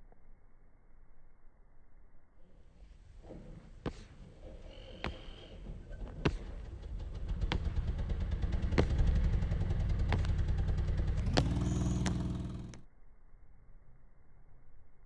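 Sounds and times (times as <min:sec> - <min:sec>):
vehicle engine accelerating: 0:06.6 - 0:12.8.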